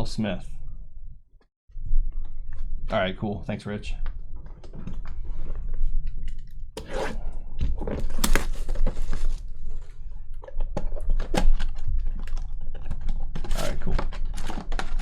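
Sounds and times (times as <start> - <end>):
pack wrappers crinkling and tearing: 10.5 - 15.0.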